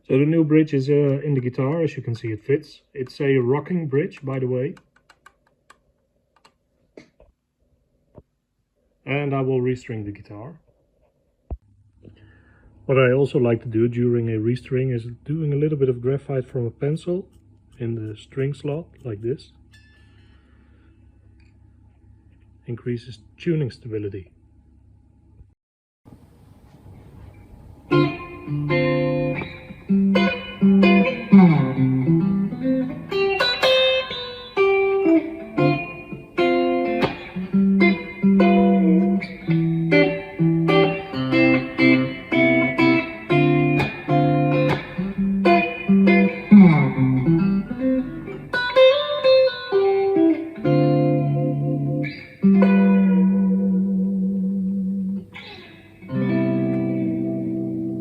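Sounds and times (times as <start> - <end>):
electric guitar playing: 27.6 - 58.0.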